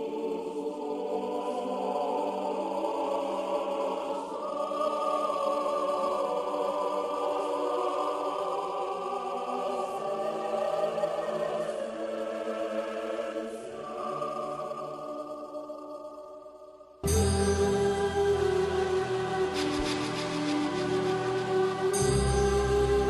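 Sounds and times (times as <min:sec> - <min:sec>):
choir singing held chords: 0:00.0 - 0:23.0
orchestral accompaniment: 0:17.0 - 0:23.0.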